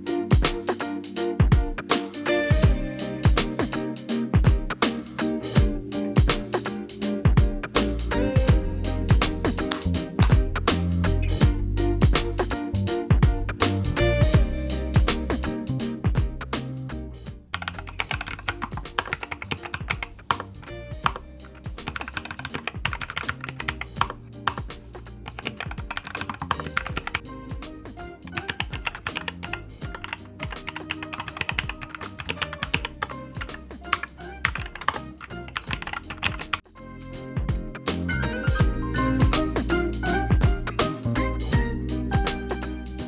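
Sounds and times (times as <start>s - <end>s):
background music: 0.0s - 43.0s
fast typing on mechanical keyboard: 17.6s - 20.4s, 21.8s - 27.2s, 28.3s - 36.6s.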